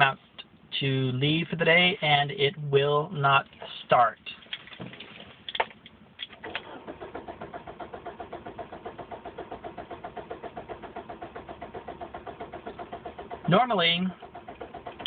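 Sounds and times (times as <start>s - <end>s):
rapid clicking of car: 4.3s - 15.0s.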